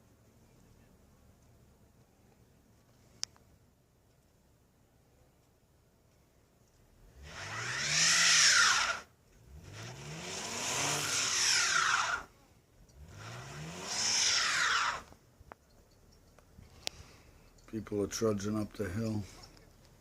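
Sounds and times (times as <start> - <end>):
car engine revving: 7.0 - 15.2
wheels spinning on snow: 7.1 - 15.2.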